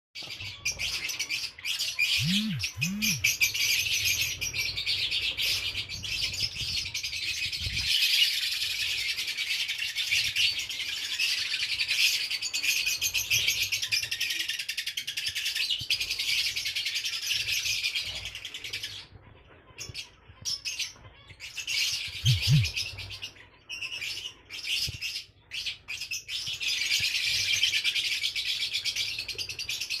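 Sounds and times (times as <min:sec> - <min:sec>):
lovebirds chirping: 0:00.3 - 0:03.7, 0:19.8 - 0:27.4.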